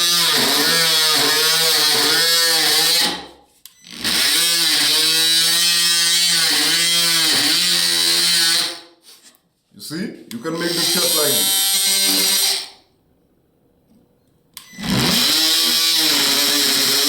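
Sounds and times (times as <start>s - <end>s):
oscillating multi-tool cutting wood: 0.0s - 8.9s, 10.5s - 12.8s, 14.6s - 17.0s.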